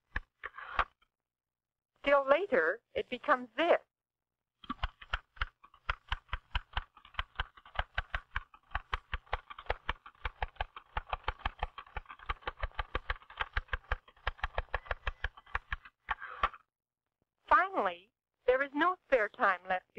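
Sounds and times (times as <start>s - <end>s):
typewriter keys striking: 4.9s - 15.8s.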